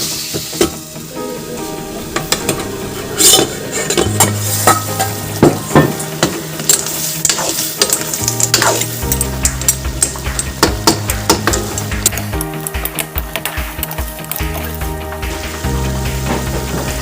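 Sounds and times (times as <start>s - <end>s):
food sizzling in a pan: 0.0s - 17.0s
utensil scraping a pan: 1.6s - 10.5s.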